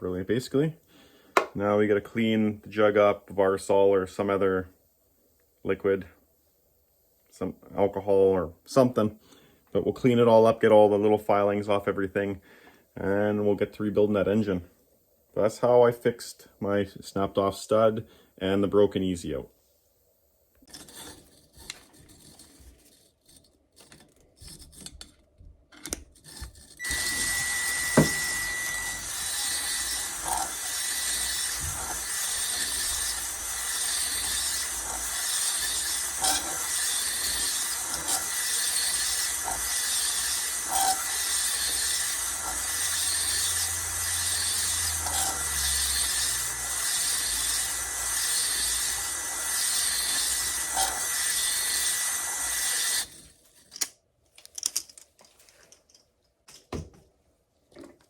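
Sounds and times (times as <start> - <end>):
tool scraping back and forth: 20.6 - 54.0
thin whistle-like tone: 27.2 - 29.0
faint handling sounds: 53.2 - 58.0.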